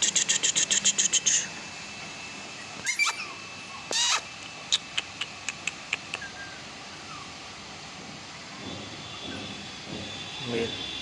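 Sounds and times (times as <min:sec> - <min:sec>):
puppy yipping: 0:02.6 - 0:07.4.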